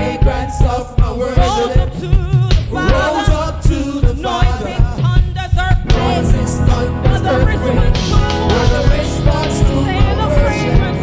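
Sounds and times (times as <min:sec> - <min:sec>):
singers holding sustained notes: 0:00.0 - 0:02.0
gospel band playing: 0:00.0 - 0:11.0.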